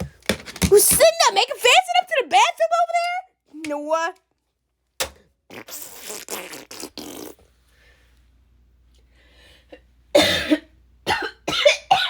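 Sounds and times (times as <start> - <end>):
sputtering fart: 5.5 - 7.5.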